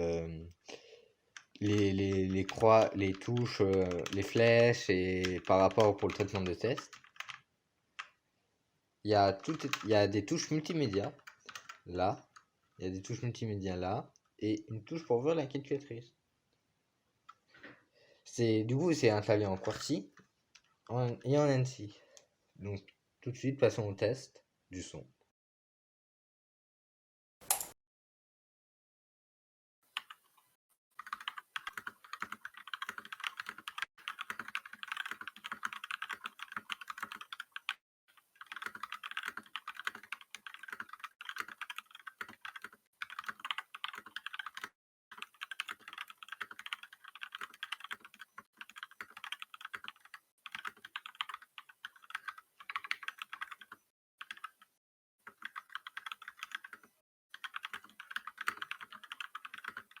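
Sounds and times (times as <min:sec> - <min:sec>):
mechanical keyboard typing: 0:01.4 - 0:07.4, 0:09.4 - 0:11.8, 0:31.0 - 0:37.8, 0:38.4 - 1:00.0.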